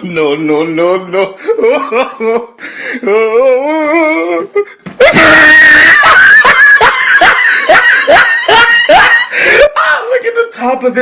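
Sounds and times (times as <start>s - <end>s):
wavering voice: 3.0s - 4.7s
loud distorted screaming: 5.0s - 6.9s.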